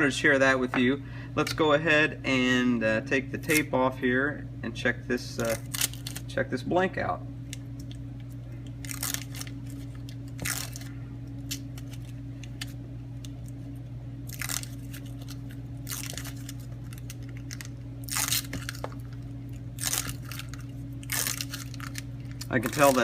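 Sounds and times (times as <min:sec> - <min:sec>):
steady low hum: 0:00.0 - 0:23.0
tape peeling off: 0:08.8 - 0:13.6, 0:14.3 - 0:23.0.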